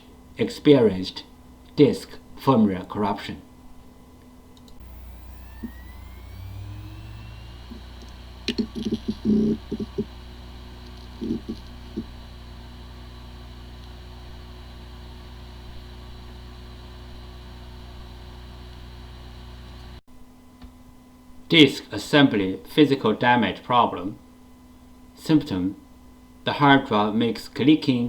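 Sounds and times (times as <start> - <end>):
hard drive spinning hum: 3.5 - 20.0
hard drive whine: 3.5 - 20.0
hard drive clicks and knocks: 7.7 - 12.2.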